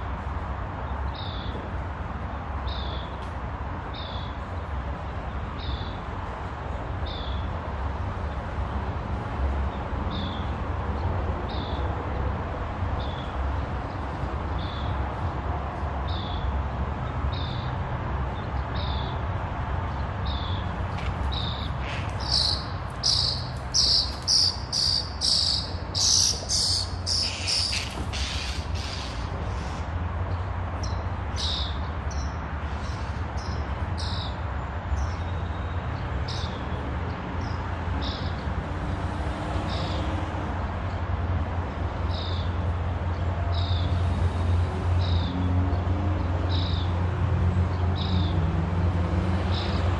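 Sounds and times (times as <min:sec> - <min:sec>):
small birds chirping: 0:20.2 - 0:36.7.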